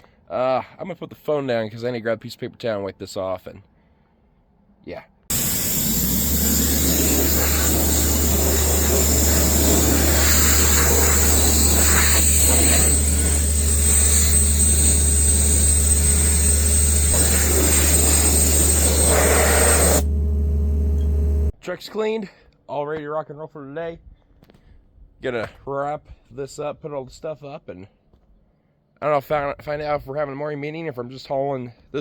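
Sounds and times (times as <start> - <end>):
blower running: 5.3 - 21.5.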